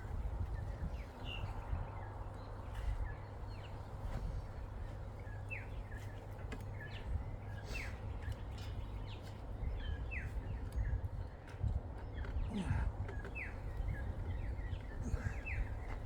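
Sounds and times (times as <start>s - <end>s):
small birds chirping: 6.8s - 16.0s.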